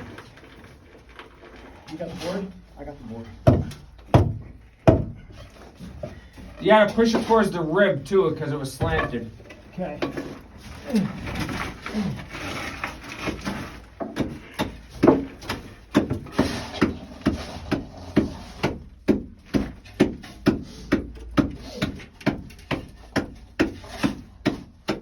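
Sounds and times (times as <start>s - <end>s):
hammer striking wooden board: 3.4s - 5.2s.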